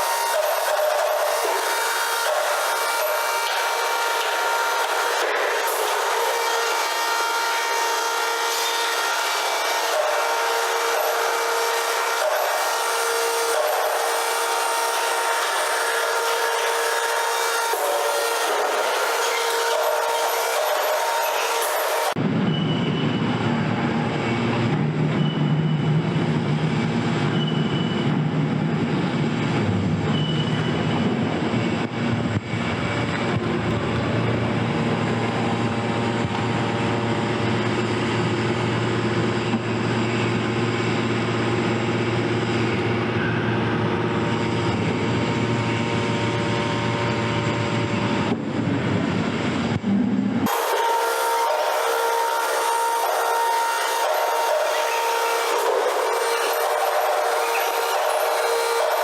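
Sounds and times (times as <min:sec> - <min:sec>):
hydraulic machine drone: 0:00.0 - 0:59.0
sheet metal squealing: 0:50.5 - 0:59.0.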